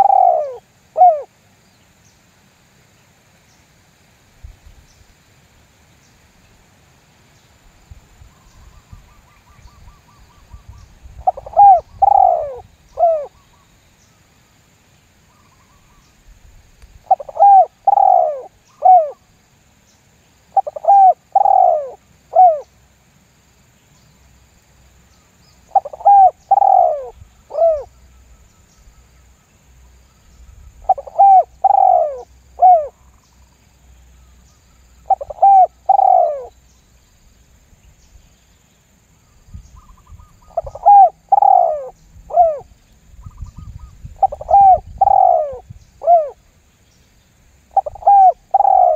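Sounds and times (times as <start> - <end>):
dove cooing: 0.0 - 1.3, 11.2 - 13.4, 17.0 - 19.2, 20.5 - 22.7, 25.7 - 27.9, 30.8 - 33.0, 35.1 - 36.5, 39.8 - 46.4, 47.7 - 48.9.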